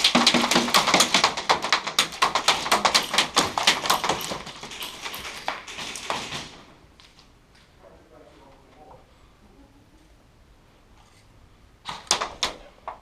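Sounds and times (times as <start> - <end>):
rapid airsoft gunfire: 0.0 - 6.8.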